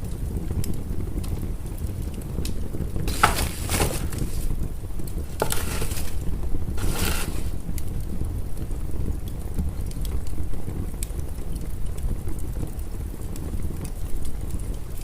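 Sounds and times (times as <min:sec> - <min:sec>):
fire crackling and popping: 0:00.0 - 0:15.0
fire rumbling in a fireplace: 0:00.0 - 0:15.0
hissing flare-ups: 0:03.0 - 0:08.0.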